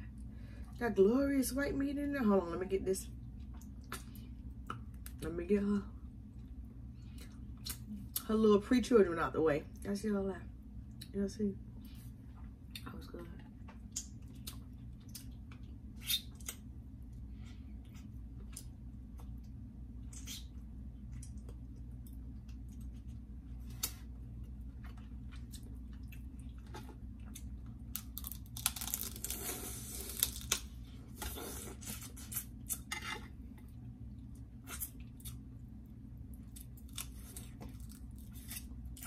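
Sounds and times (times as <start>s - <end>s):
crab shells cracking: 27.9s - 29.4s.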